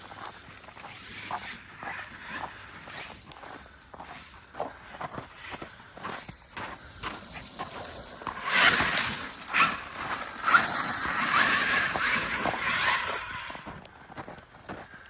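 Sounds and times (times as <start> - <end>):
electric motor whining: 8.0 - 13.9.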